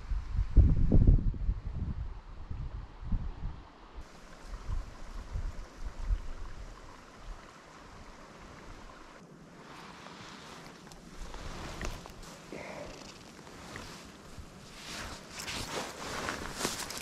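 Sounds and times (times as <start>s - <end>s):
wind buffeting microphone: 0.0s - 9.1s
mountain stream rushing: 4.0s - 17.0s.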